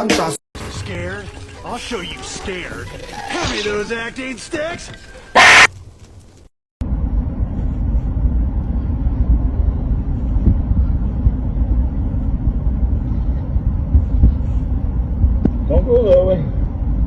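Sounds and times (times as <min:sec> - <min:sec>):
steady low rumble: 0:06.8 - 0:17.0.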